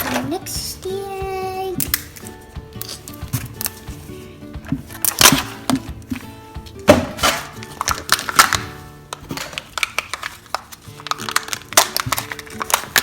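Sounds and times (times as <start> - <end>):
background music: 0.0 - 13.0
foil wrapper crinkling: 7.2 - 13.0.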